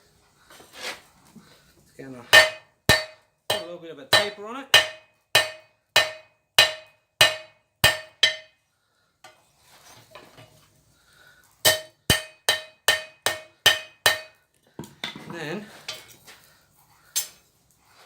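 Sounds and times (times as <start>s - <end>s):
hammer striking steel on anvil: 2.3s - 8.6s, 11.6s - 14.4s.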